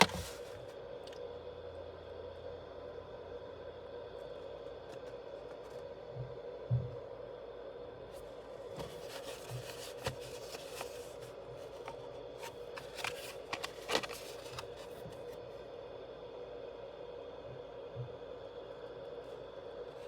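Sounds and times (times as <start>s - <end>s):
packaging rustling and scraping: 0.0s - 0.7s, 8.2s - 15.4s
steady hum: 0.0s - 20.0s.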